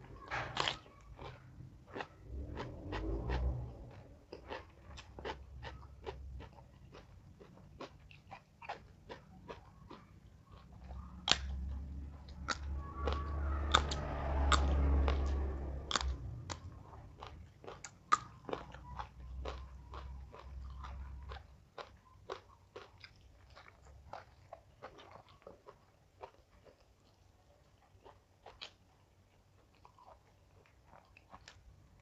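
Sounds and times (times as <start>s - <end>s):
crunchy vegetable chewing: 0.0s - 32.0s.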